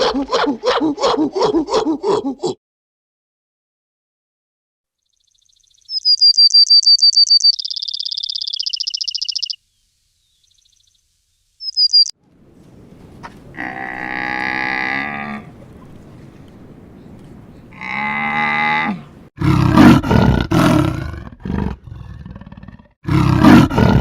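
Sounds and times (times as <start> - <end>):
bird high-pitched trill: 5.1 - 11.0, 11.6 - 12.1.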